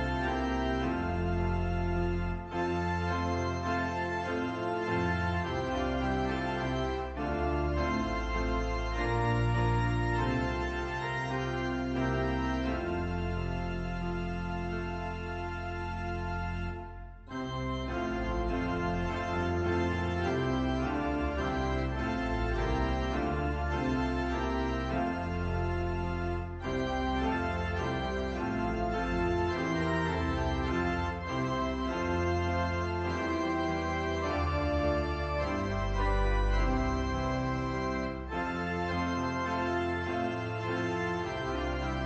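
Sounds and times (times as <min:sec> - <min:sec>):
organ music: 0:00.0 - 0:42.0.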